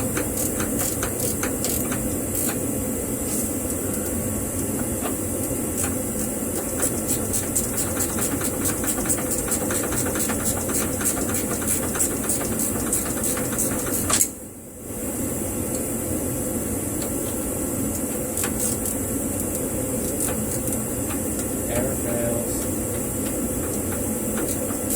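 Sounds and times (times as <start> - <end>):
steady background hum: 0.0 - 24.9
ratchet wrench clicking: 0.3 - 2.6.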